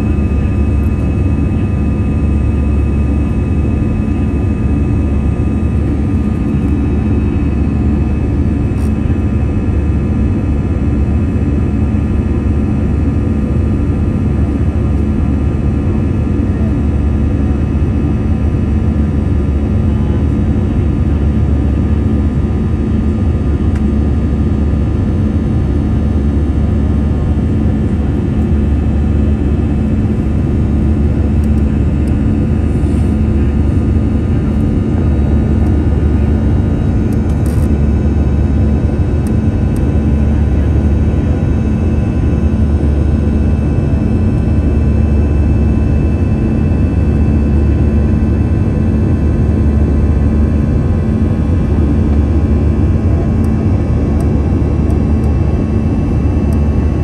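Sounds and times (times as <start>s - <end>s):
tonal engine hum: 0.0s - 57.0s
jet engines rumbling: 17.8s - 57.0s.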